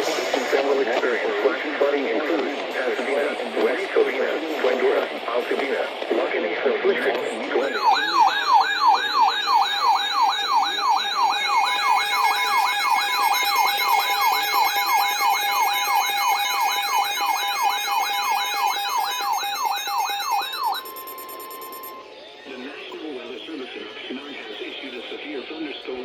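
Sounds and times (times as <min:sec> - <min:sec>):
warbling electronic alert tone: 0:07.6 - 0:22.0.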